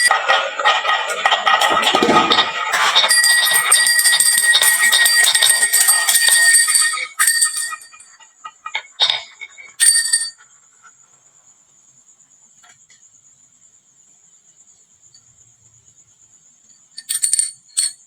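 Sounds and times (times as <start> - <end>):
marbles clattering on wood: 0.0 - 8.1.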